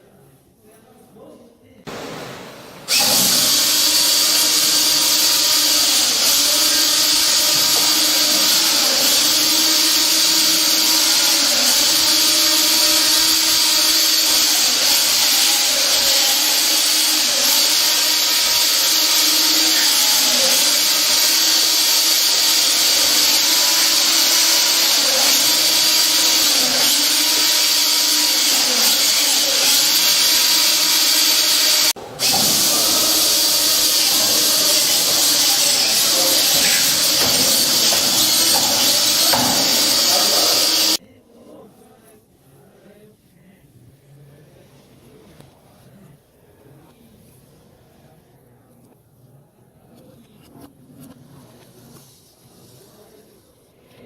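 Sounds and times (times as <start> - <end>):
loud whirring machine with hiss: 1.9 - 41.0.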